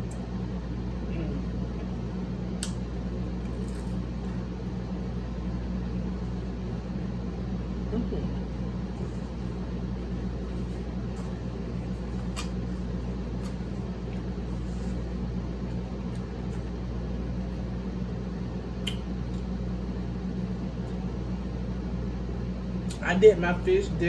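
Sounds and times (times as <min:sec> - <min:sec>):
low room hum: 0:00.0 - 0:24.0.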